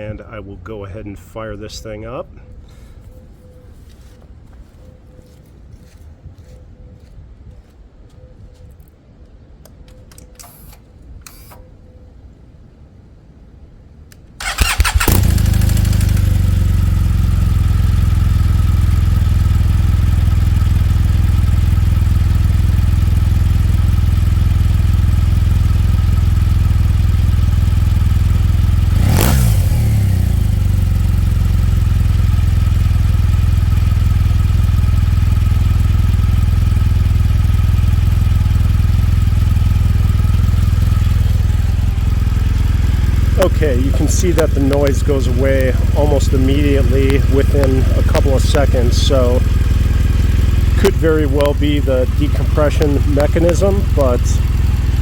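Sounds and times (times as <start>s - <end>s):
engine revving: 14.4s - 20.8s, 27.4s - 33.9s, 37.8s - 55.0s
motorcycle engine idling: 14.4s - 55.0s
engine cylinder clatter: 38.5s - 55.0s.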